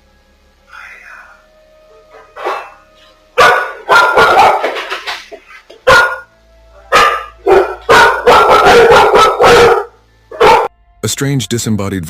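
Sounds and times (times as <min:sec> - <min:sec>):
dogs barking loudly: 0:03.4 - 0:06.3, 0:06.9 - 0:10.7.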